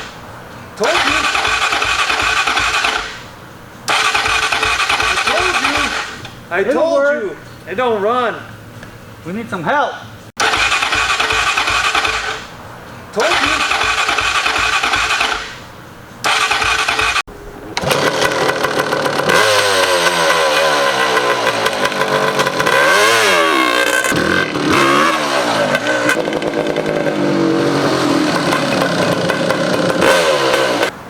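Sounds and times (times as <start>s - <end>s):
motorcycle engine revving: 0.8s - 3.2s, 3.9s - 6.2s, 10.4s - 12.5s, 13.2s - 15.6s, 16.2s - 31.0s.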